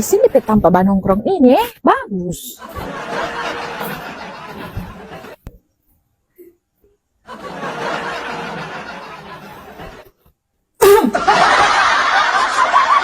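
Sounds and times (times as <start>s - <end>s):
people laughing: 2.6s - 5.4s, 7.3s - 10.1s, 11.1s - 13.0s.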